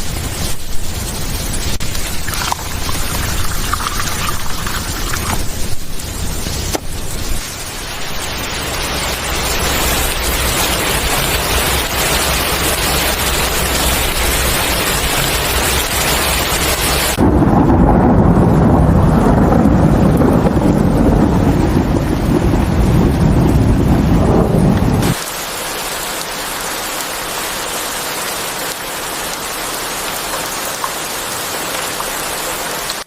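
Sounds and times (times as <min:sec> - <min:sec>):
heavy rain hissing: 0:00.0 - 0:33.0
low thunder rumble: 0:17.1 - 0:25.2
deep dull rushing: 0:17.2 - 0:25.2.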